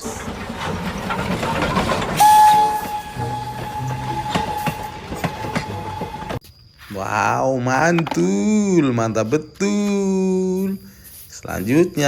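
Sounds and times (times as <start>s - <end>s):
train rattling and chugging: 0.0s - 6.4s
long steady train whistle: 2.2s - 6.4s.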